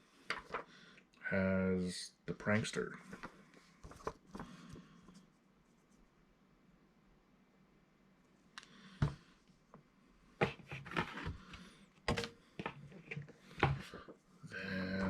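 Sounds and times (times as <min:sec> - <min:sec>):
paper and plastic rustling: 0:03.0 - 0:04.8.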